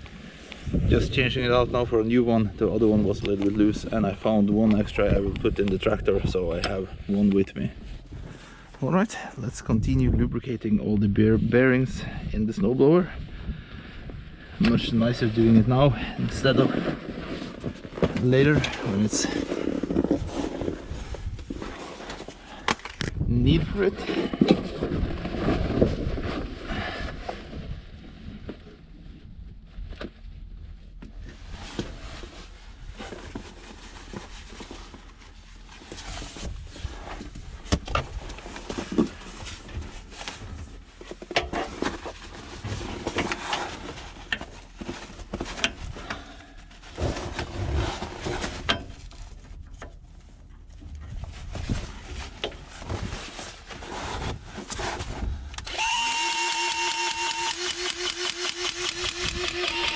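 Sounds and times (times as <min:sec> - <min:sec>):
motor running with pulsing tone: 0:55.6 - 0:59.9.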